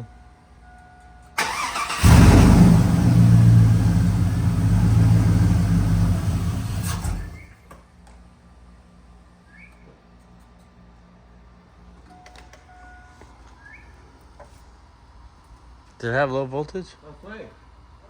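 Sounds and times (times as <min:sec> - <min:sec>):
pickup engine cranking and running: 0:01.4 - 0:07.6.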